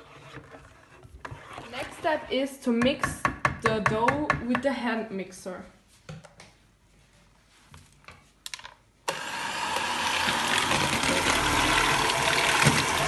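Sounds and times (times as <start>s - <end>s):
electric hand mixer running: 9.1s - 13.0s.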